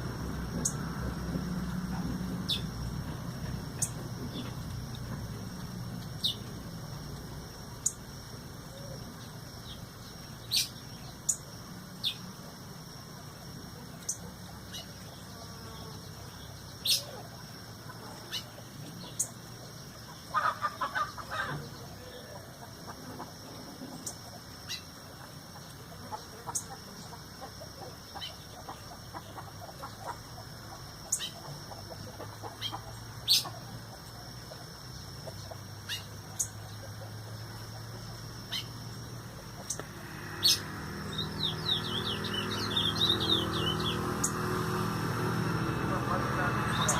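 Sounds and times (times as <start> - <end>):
birds calling: 0.0 - 6.9, 7.6 - 12.3, 13.8 - 46.9
high-pitched hum: 39.0 - 46.9.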